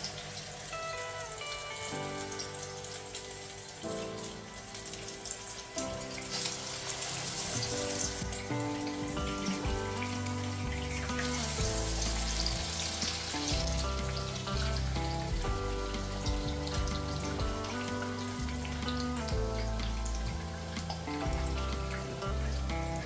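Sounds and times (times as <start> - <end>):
food frying in hot oil: 0.0 - 23.0
background music with bass: 5.7 - 23.0.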